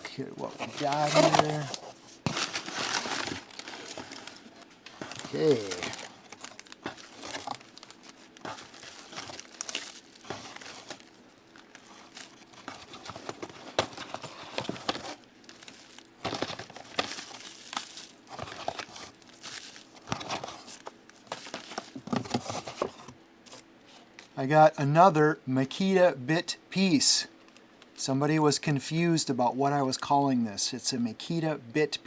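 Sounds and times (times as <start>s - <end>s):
packing material crinkling: 0.0s - 23.6s.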